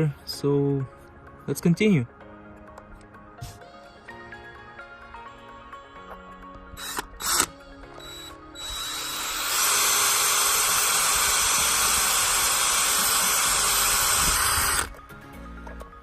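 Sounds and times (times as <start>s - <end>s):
cordless drill grinding: 6.8s - 15.0s.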